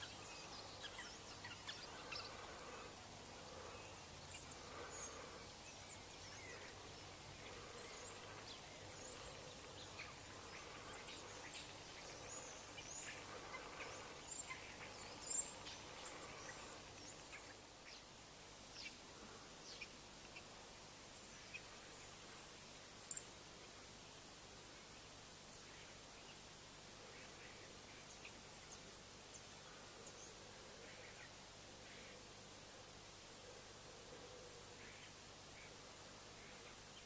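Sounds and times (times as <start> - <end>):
small birds chirping: 0.0 - 23.8
quiet outdoor background: 0.0 - 37.0.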